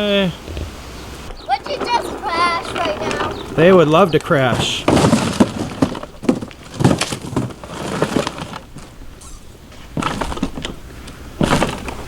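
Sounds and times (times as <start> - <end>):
cardboard boxes knocked and crumpled: 4.4 - 9.0, 9.8 - 12.0.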